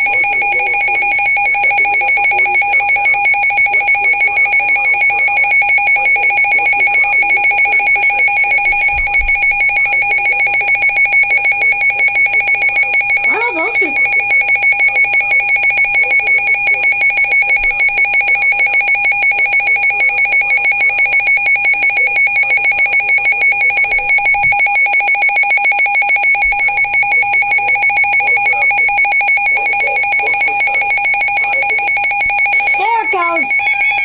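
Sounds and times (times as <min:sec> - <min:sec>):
steady electronic alert tone: 0:32.6 - 0:34.0.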